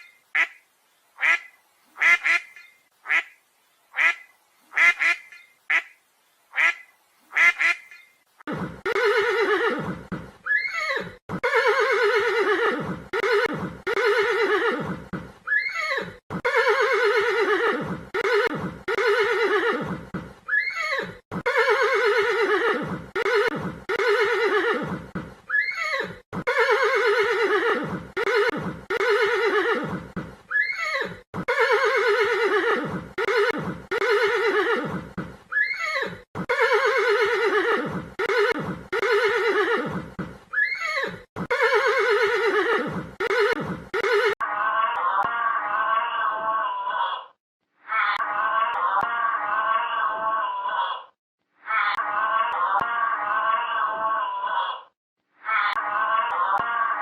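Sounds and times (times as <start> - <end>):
duck quacking: 0.4 - 0.6, 1.2 - 3.4, 4.0 - 8.0
horse whinnying: 8.5 - 44.4.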